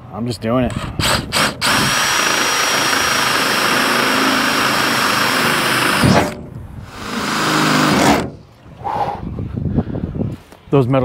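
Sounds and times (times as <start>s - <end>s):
cordless drill boring through sheet metal: 0.7s - 8.4s.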